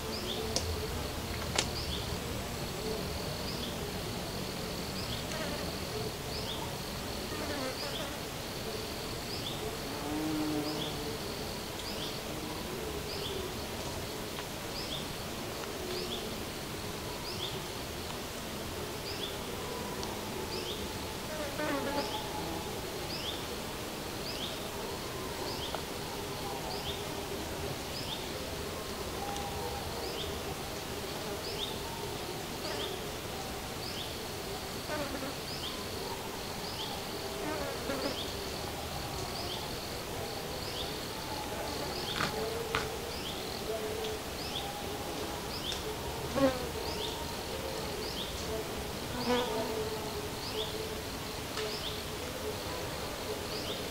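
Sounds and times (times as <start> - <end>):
flying insect buzzing: 9.9 - 11.6, 21.3 - 22.6.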